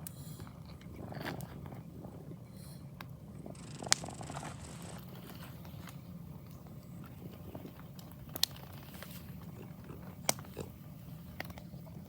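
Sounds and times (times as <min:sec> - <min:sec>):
campfire rumble: 0:00.0 - 0:12.0
burning wood popping: 0:03.0 - 0:11.8.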